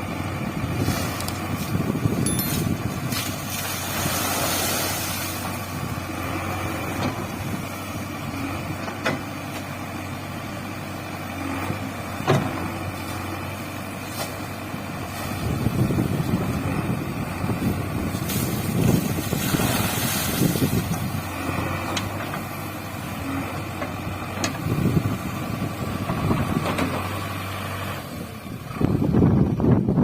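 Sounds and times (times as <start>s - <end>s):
diesel engine humming: 0.0s - 30.0s.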